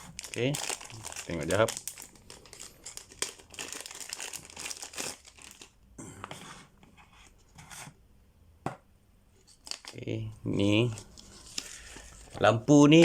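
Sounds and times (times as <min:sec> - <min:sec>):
packaging crinkling: 0:00.0 - 0:05.8, 0:09.5 - 0:13.0.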